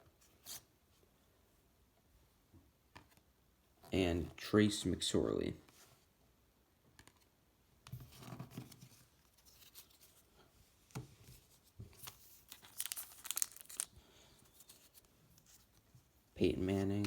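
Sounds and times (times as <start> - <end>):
sharp crackling of wrapper: 12.0 - 15.6
wrapper crinkling: 12.0 - 15.7.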